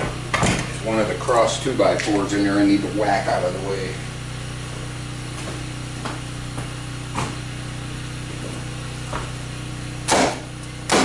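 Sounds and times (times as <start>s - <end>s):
steady low hum: 0.0s - 11.0s
hammer striking wood: 10.1s - 11.0s.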